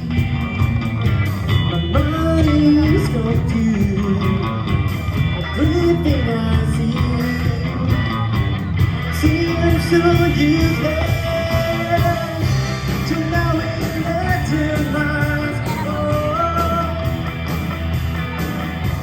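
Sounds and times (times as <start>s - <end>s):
bass guitar: 0.0s - 19.0s
drums: 0.0s - 19.0s
electric guitar: 0.0s - 19.0s
person singing: 1.6s - 4.6s, 5.4s - 17.3s.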